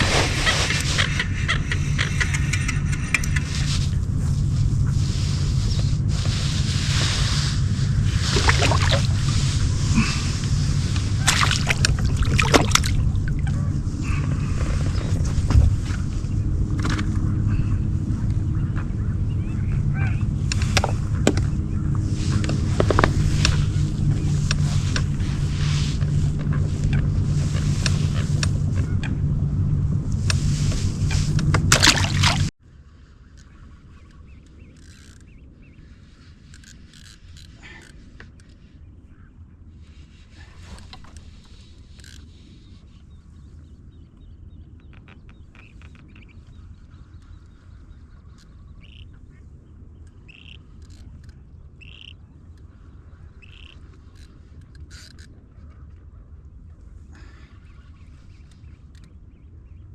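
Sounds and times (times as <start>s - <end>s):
bird call: 0.0s - 3.9s, 44.9s - 49.3s, 50.0s - 52.2s, 53.3s - 54.3s
boat motor humming: 0.0s - 32.6s, 44.9s - 59.6s
low rumble: 0.0s - 32.6s
bird chirps: 43.9s - 49.3s, 50.0s - 52.4s.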